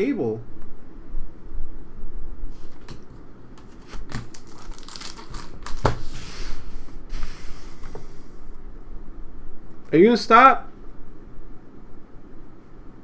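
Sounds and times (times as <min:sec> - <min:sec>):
foil wrapper crinkling and tearing: 0:03.7 - 0:06.1.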